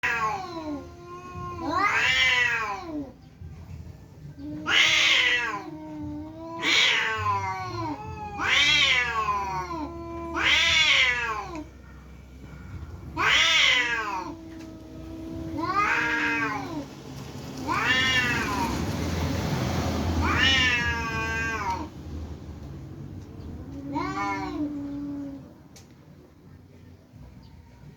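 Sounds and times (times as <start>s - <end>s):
cats yowling: 0.0s - 3.2s, 4.3s - 21.9s, 23.4s - 25.6s
low drawn-out cat moan: 4.4s - 12.0s, 12.7s - 16.8s, 23.6s - 25.6s.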